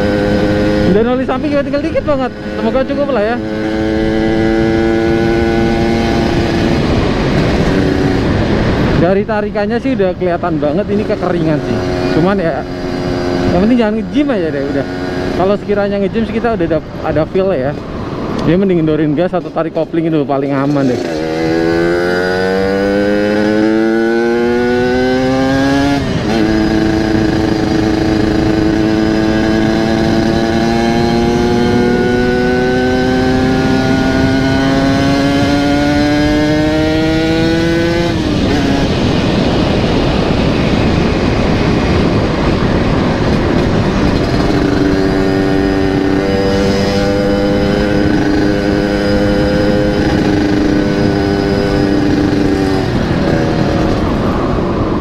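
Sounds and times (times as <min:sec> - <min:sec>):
rushing noise: 0:00.0 - 0:55.0
two-stroke motorcycle engine: 0:20.6 - 0:54.4.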